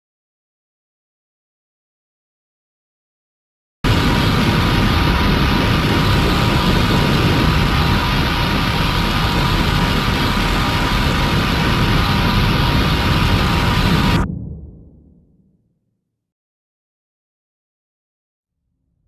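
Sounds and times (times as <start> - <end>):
loud noisy rumble: 3.8 - 15.4.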